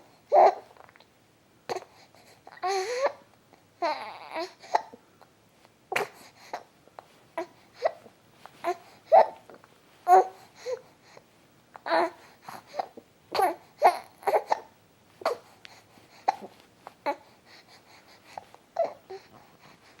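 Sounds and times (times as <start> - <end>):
baby crying and cooing: 0.3 - 0.7, 1.7 - 3.2, 3.8 - 5.0, 5.9 - 6.7, 7.4 - 10.8, 11.8 - 15.6, 18.3 - 19.3
baby hiccups: 5.9 - 6.2.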